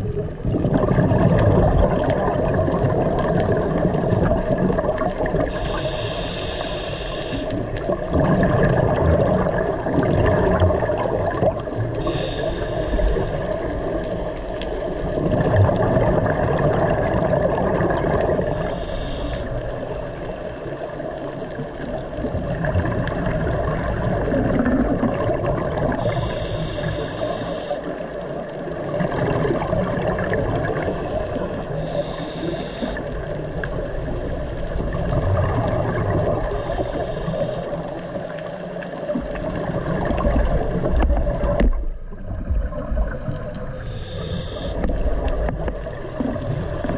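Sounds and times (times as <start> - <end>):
exhaled bubbles gurgling: 0.0 - 46.9
steady watery rush: 0.0 - 46.9
regulator hissing: 5.6 - 7.5.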